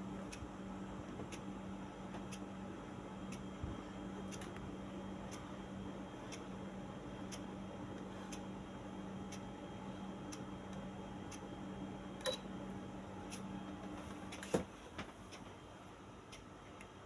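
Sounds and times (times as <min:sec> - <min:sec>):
air conditioner hum: 0:00.0 - 0:17.0.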